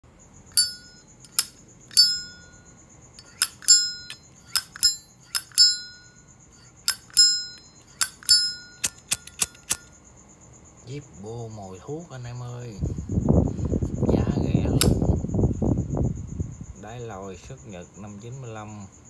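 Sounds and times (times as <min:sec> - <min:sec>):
lighter lid clicking open and shut: 0:01.3 - 0:02.0, 0:08.0 - 0:09.9.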